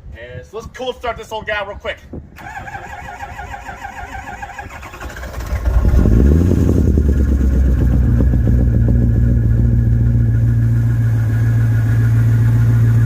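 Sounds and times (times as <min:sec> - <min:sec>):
diesel engine starting and idling: 0:02.4 - 0:13.0.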